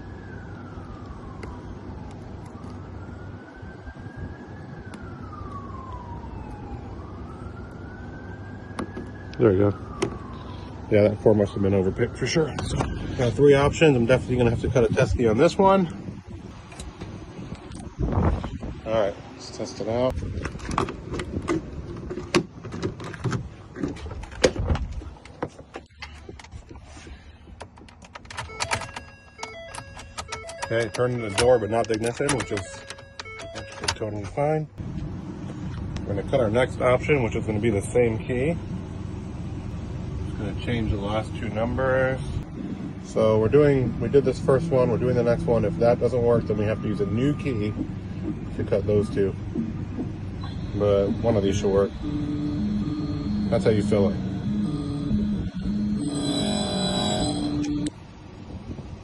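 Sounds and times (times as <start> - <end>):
distant siren wailing: 0.0 - 14.4, 28.4 - 34.6, 43.8 - 58.0
short steady tones: 49.1 - 58.0.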